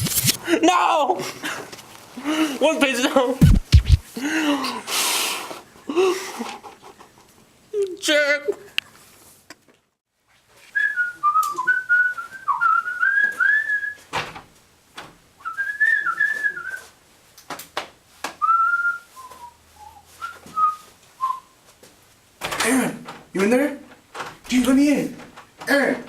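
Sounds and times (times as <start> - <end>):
person whistling a tune: 10.8 - 14.0, 15.4 - 16.9, 18.4 - 21.5.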